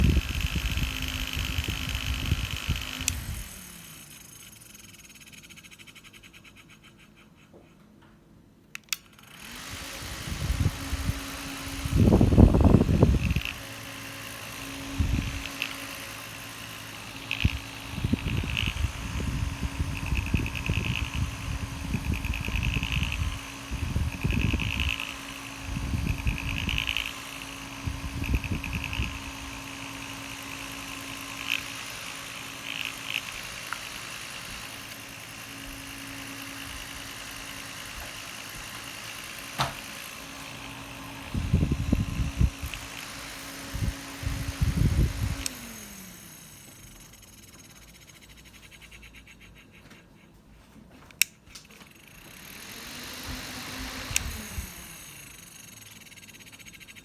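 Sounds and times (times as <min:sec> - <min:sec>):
fan motor hum and airy hiss: 0:00.0 - 0:04.7, 0:08.7 - 0:49.1, 0:50.4 - 0:57.0
sharp click: 0:08.7 - 0:09.2
fast ticking: 0:24.0 - 0:35.2.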